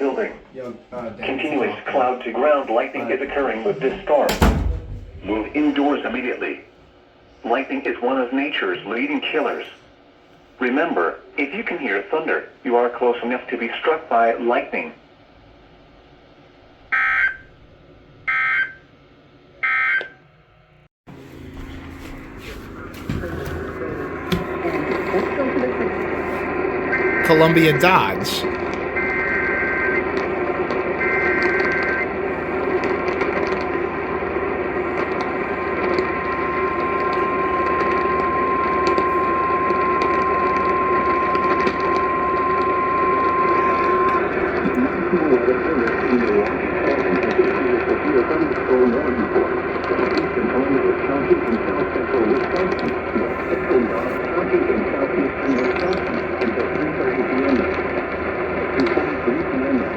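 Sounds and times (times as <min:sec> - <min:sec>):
broadcast hum and hiss: 0:27.2 - 0:28.4
steady high alert tone: 0:27.2 - 0:28.4.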